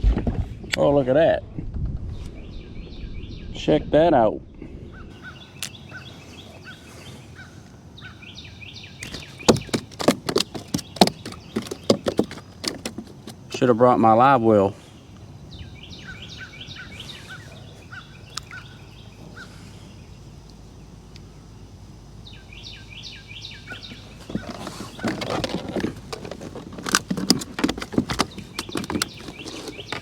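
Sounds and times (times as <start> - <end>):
songbird chirping: 2.2 - 30.0
fish flopping on kayak: 9.0 - 13.6, 23.9 - 30.0.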